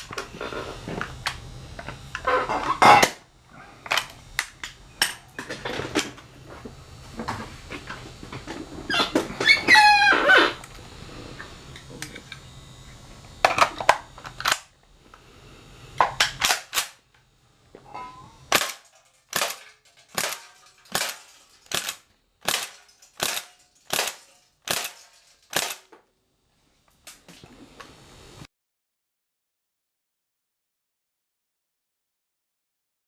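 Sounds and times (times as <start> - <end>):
air rifle shots clacking: 16.3 - 17.0, 18.5 - 25.9.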